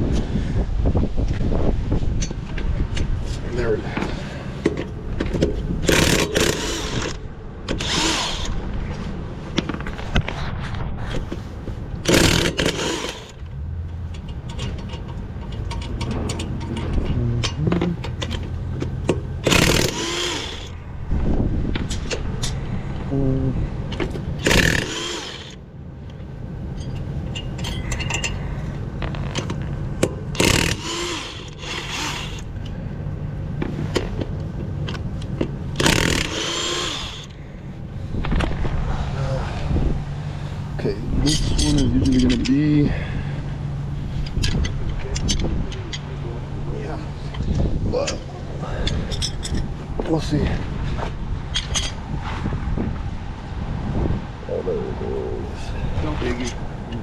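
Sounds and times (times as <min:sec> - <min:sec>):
steady low rumble: 0:00.0 - 0:57.0
impact wrench bursts: 0:05.8 - 0:08.6, 0:12.0 - 0:13.4, 0:19.4 - 0:20.8, 0:24.4 - 0:25.6, 0:30.3 - 0:32.5, 0:35.7 - 0:37.4.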